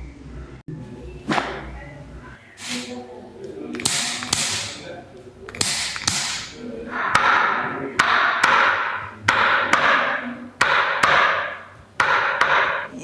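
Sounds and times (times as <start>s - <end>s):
sharp taps with short hiss: 5.6s - 6.6s.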